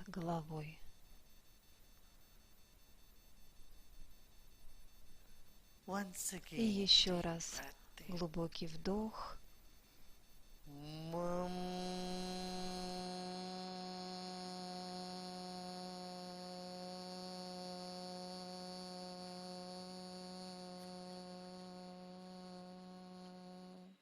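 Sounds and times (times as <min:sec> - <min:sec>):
voice chanting a hummed mmm: 0:10.7 - 0:24.0.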